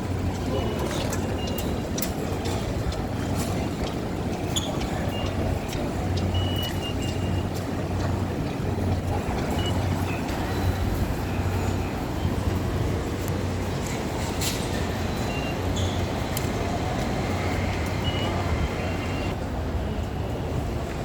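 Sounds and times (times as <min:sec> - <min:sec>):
faint high beeps: 0:06.3 - 0:07.4, 0:09.5 - 0:10.6, 0:15.2 - 0:16.0, 0:18.0 - 0:19.3.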